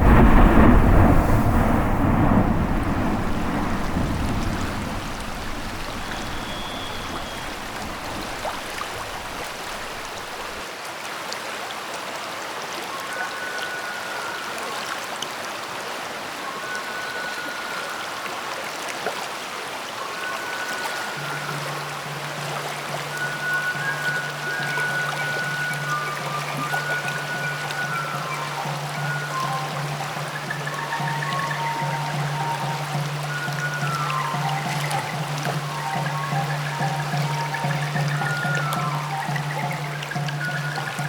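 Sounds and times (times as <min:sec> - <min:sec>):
low rumble: 0:00.0 - 0:10.6
rushing water: 0:00.0 - 0:41.0.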